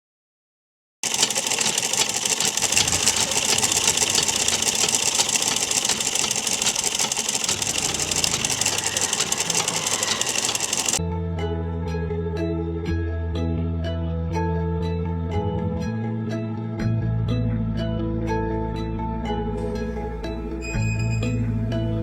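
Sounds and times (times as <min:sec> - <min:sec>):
sewing machine running: 0:01.0 - 0:11.0.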